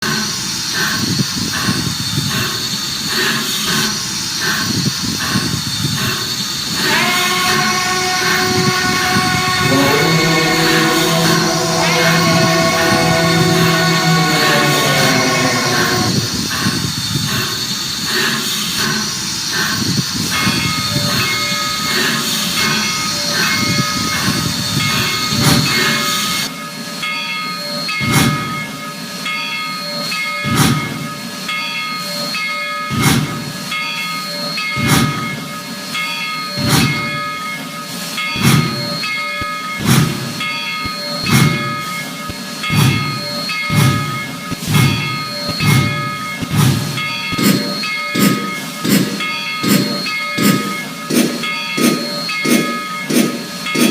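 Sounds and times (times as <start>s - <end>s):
steam hissing: 0.0s - 53.9s
steady high tones: 5.9s - 18.9s, 19.6s - 53.9s
locomotive exhaust chuffs: 39.8s - 53.9s.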